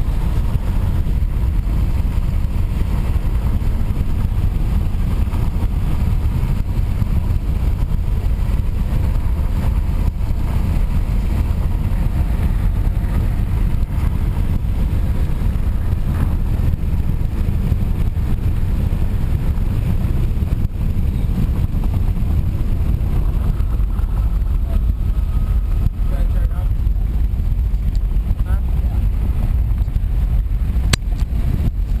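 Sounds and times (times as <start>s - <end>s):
car road and engine rumble: 0.0s - 32.0s.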